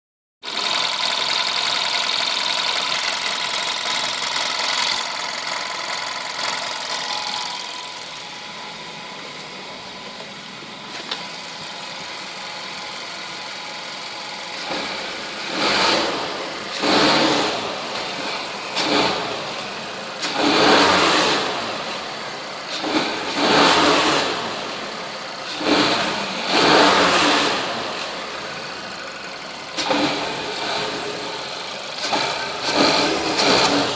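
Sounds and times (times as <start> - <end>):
car engine idling and revving: 0.4 - 33.9.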